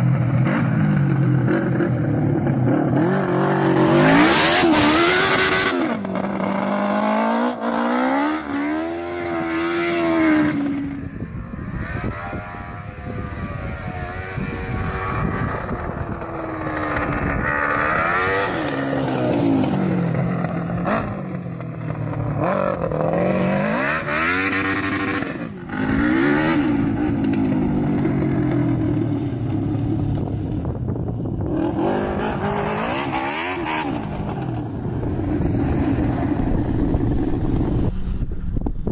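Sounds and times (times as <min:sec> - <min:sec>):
engine revving hard: 0:02.9 - 0:06.0, 0:31.6 - 0:34.1.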